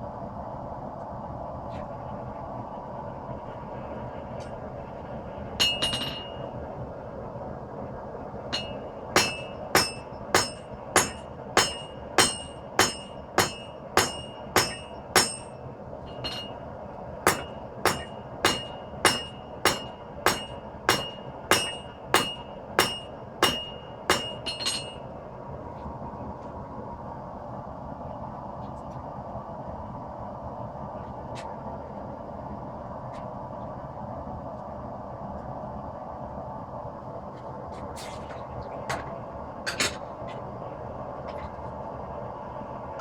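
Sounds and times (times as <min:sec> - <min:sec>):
hammer striking steel on anvil: 0:05.6 - 0:06.5, 0:08.6 - 0:16.6, 0:17.3 - 0:25.1.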